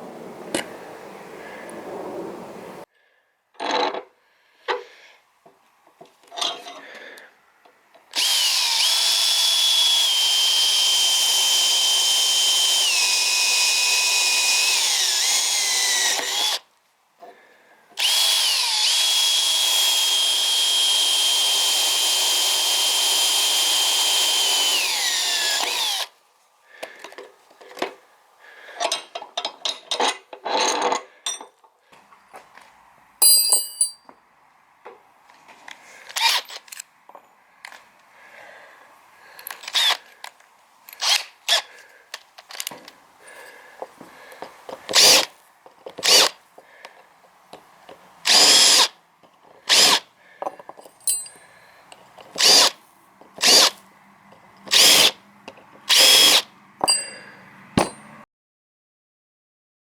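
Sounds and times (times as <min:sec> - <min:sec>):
electric drill whining: 0:08.2 - 0:16.6, 0:18.0 - 0:26.1, 0:39.7 - 0:40.0, 0:44.9 - 0:45.3, 0:46.0 - 0:46.3, 0:48.2 - 0:49.0, 0:49.7 - 0:50.0, 0:52.2 - 0:52.8, 0:53.4 - 0:53.8, 0:54.7 - 0:55.2, 0:55.9 - 0:56.5
metal clattering: 0:33.2 - 0:34.0.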